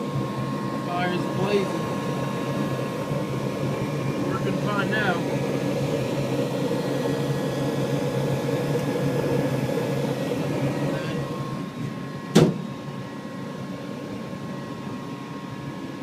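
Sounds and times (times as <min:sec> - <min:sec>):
furnace rushing hum: 0:00.0 - 0:16.0.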